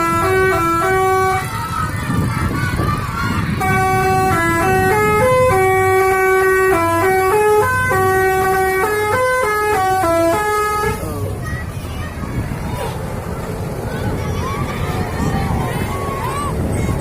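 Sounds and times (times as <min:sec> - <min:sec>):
multi-tone air horn melody: 0:00.0 - 0:01.6, 0:03.5 - 0:11.1.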